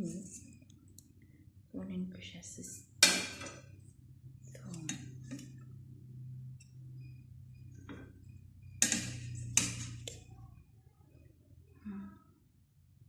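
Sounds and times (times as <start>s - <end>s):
steady low hum: 0.0s - 13.0s
cookware clanking: 8.8s - 10.2s.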